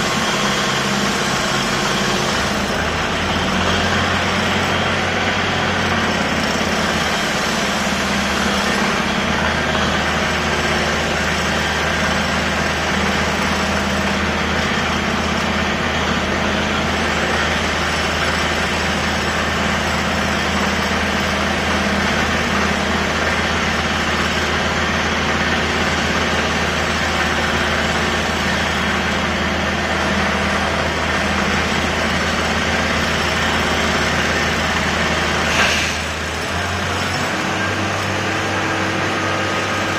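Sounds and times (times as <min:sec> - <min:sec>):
heavy machinery engine drone: 0:00.0 - 0:39.9.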